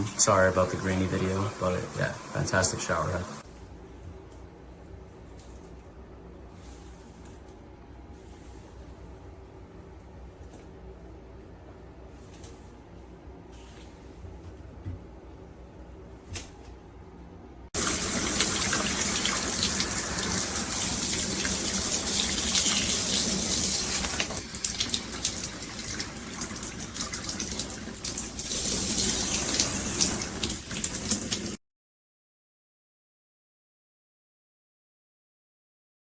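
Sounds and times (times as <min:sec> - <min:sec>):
shower head spraying water: 0:00.0 - 0:03.4, 0:17.8 - 0:31.6.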